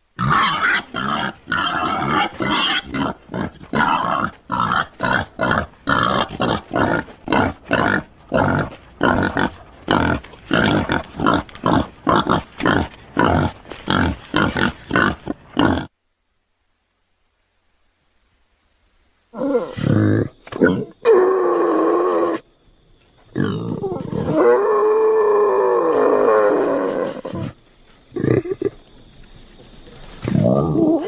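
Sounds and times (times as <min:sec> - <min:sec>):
wild boar grunting: 0:00.2 - 0:15.9.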